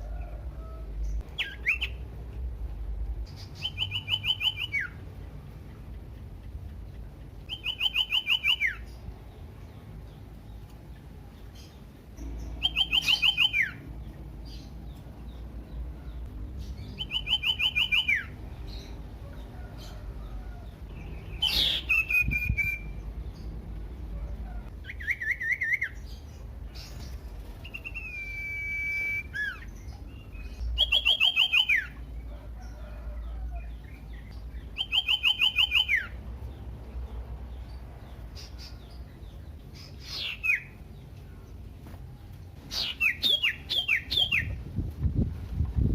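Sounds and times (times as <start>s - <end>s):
bird whistles: 1.4s - 2.0s, 3.5s - 5.0s, 7.5s - 8.9s, 12.6s - 13.8s, 17.0s - 18.3s, 21.4s - 23.0s, 27.6s - 29.7s, 30.8s - 32.0s, 34.8s - 36.2s.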